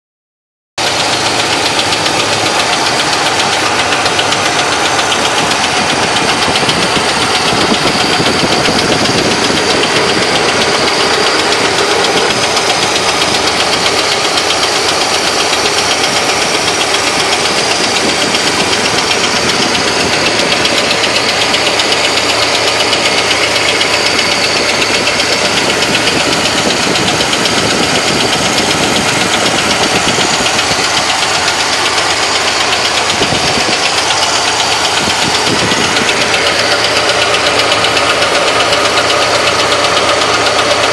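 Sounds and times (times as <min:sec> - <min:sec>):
engine running with loud knock: 0:00.8 - 0:40.9.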